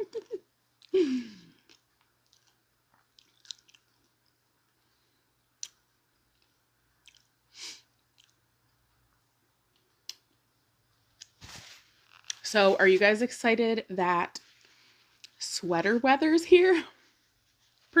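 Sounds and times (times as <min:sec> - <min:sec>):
faint chewing: 0:00.2 - 0:10.4
crunchy chew: 0:01.6 - 0:04.5, 0:05.6 - 0:07.4, 0:08.0 - 0:08.4
wet mouth clicks: 0:05.6 - 0:05.8.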